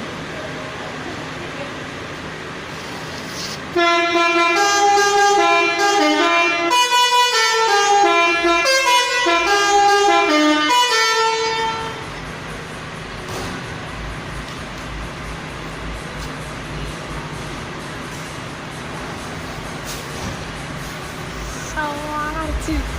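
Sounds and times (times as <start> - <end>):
steady low hum: 0.0 - 22.9
bus horn playing melody: 3.7 - 12.2.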